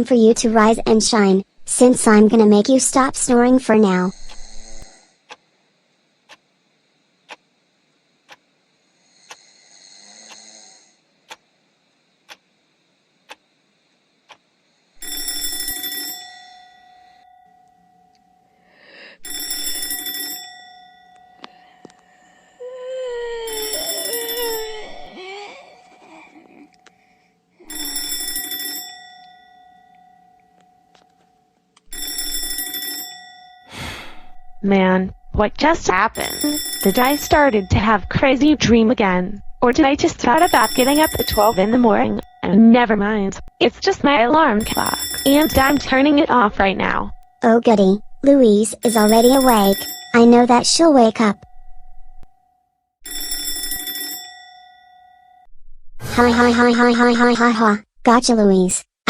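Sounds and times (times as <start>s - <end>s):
clock ticking: 3.8s - 4.5s, 34.6s - 51.5s
faint snore: 4.0s - 5.3s, 8.9s - 11.0s
alarm clock ringing: 15.0s - 22.3s, 23.5s - 25.1s, 25.8s - 55.5s.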